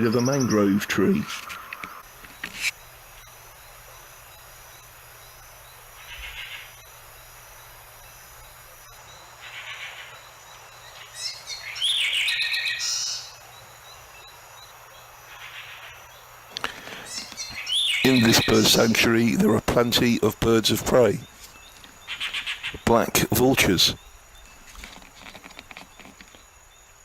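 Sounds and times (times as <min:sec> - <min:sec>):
high insect hum: 0:00.0 - 0:27.0
soft chirps: 0:00.0 - 0:27.0
whistled animal calls: 0:09.1 - 0:13.4, 0:15.3 - 0:19.2.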